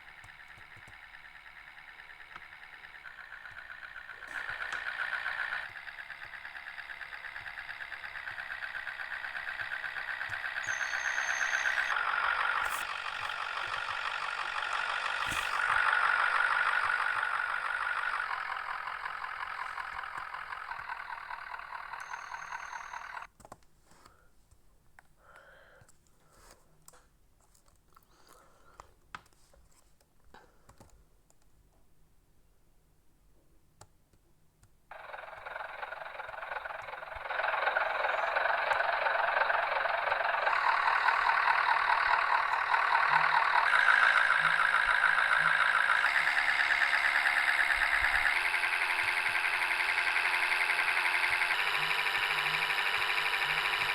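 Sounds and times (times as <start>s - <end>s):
bus diesel engine: 0.0s - 23.3s, 34.9s - 53.9s
clicks: 0.0s - 23.6s, 34.9s - 53.9s.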